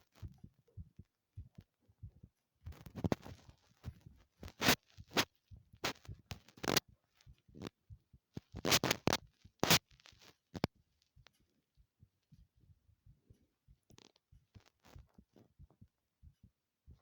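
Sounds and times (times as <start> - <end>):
scrapes and knocks on microphone: 2.1 - 7.8, 8.4 - 10.7.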